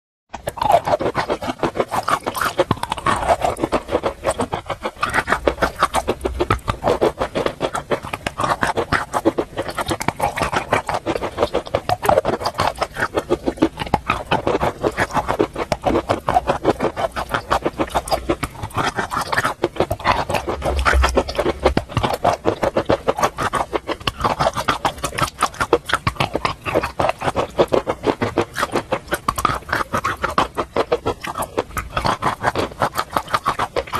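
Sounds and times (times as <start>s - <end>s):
chewing crunchy chalk: 0.3s - 33.9s.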